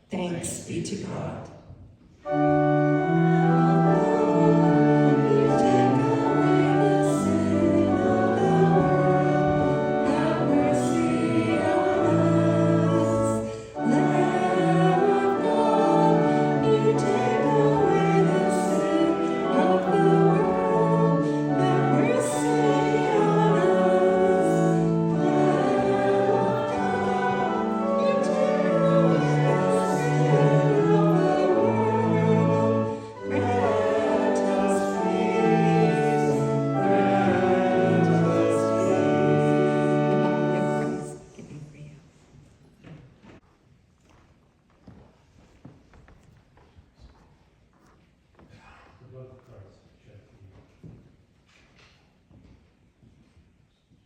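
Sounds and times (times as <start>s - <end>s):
hymn sung with accompaniment: 2.3s - 41.5s.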